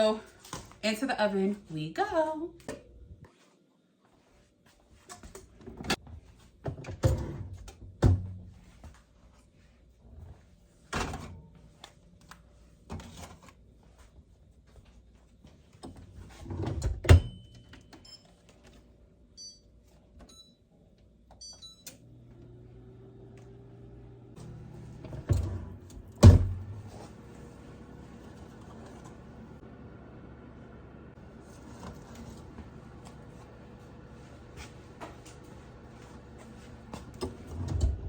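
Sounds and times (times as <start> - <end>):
oven door banging shut: 26.2 - 26.8.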